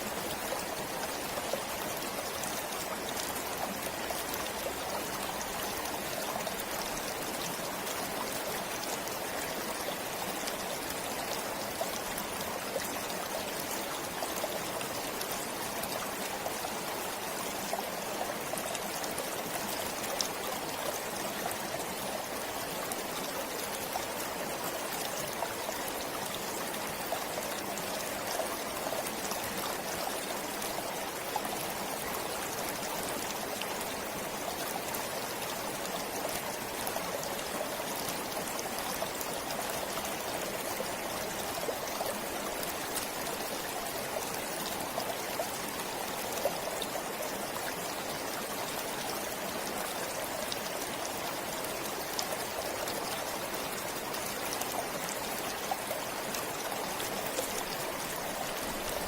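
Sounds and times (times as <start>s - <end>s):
stream flowing over rocks: 0.0s - 59.0s.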